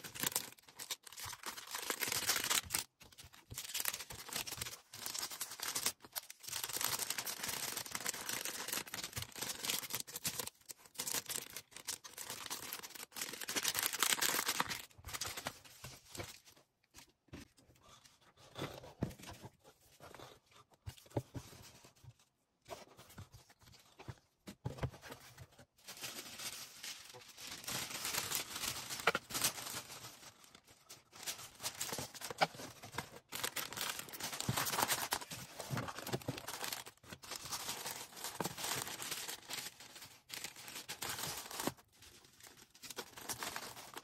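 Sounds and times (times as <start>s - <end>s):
plastic and paper rustling: 0.0s - 44.0s.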